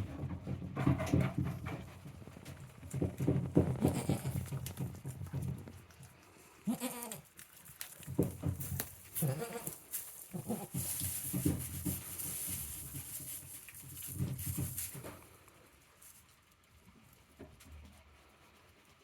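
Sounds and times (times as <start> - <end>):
goats bleating: 6.6 - 7.2, 9.2 - 10.8
rustling hiss: 8.6 - 16.2.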